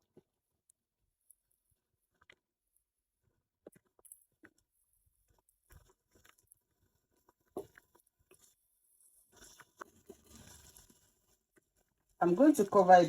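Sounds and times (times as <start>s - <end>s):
soft rustling scrape: 8.4s - 12.2s.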